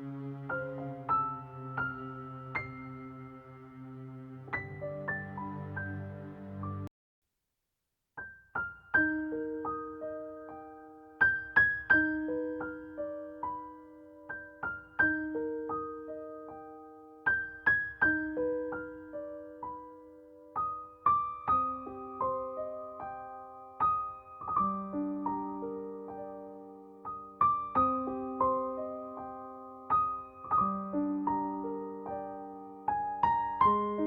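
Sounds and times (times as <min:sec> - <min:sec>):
gentle solo piano: 0:00.0 - 0:03.7, 0:08.2 - 0:34.0.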